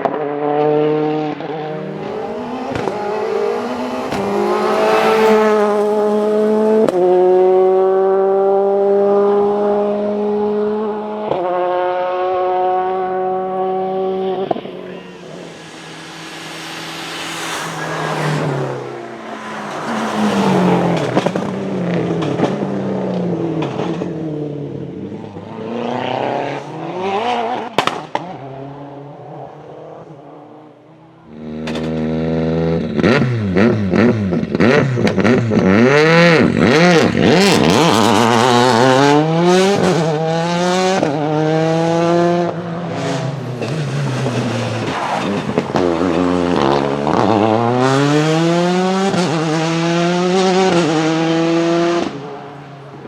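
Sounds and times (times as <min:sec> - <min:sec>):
rally car engine revving: 0:00.0 - 0:53.0.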